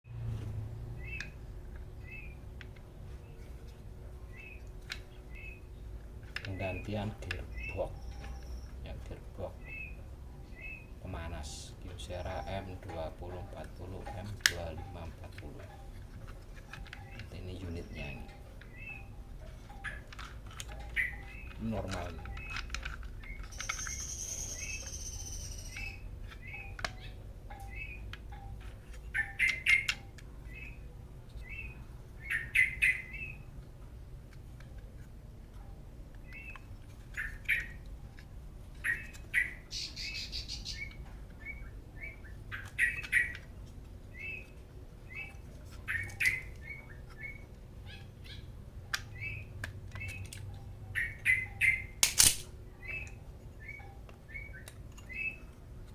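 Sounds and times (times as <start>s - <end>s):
birds chirping: 0.2s - 55.9s
whistled bird notes: 7.5s - 8.8s, 23.3s - 28.5s.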